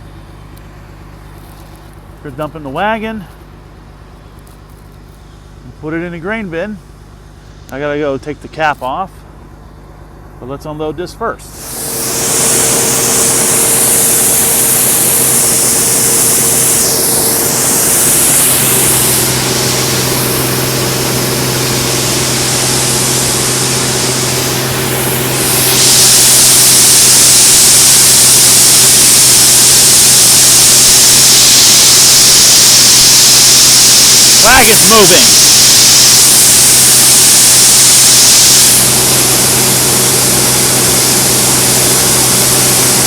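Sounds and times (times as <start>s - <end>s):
engine running: 0.0s - 43.0s
grain pouring with rushing hiss: 11.6s - 43.0s.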